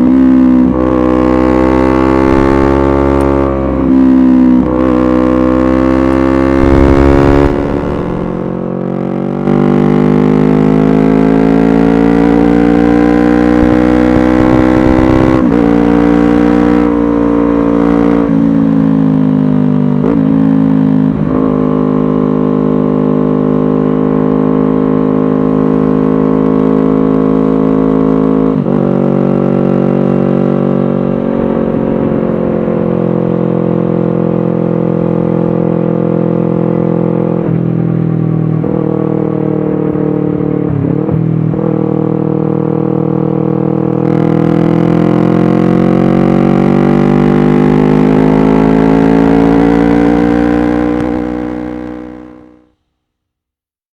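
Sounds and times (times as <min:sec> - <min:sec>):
motorcycle engine exhaust: 0:02.2 - 0:04.9, 0:06.4 - 0:09.7.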